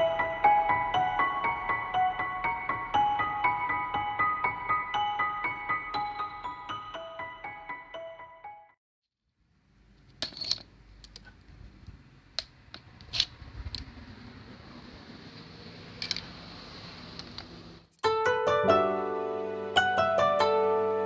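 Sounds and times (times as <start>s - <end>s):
low steady hiss: 18.0s - 21.0s
plucked harp-like music: 18.0s - 21.0s.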